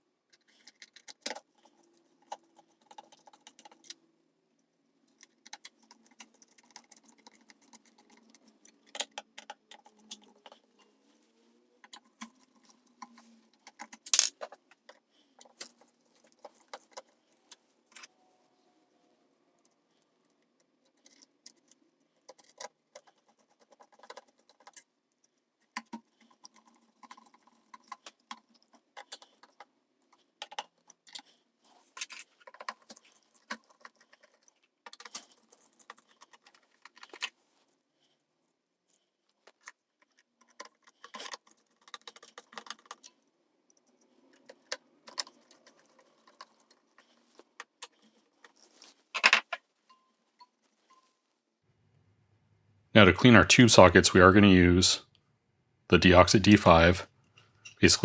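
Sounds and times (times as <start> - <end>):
small metal parts clinking: 13.6 - 14.6.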